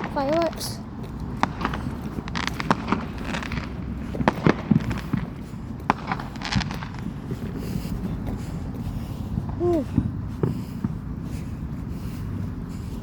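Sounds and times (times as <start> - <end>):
fireworks cracking and popping: 0.0 - 7.8
steady low rumble: 0.0 - 13.0.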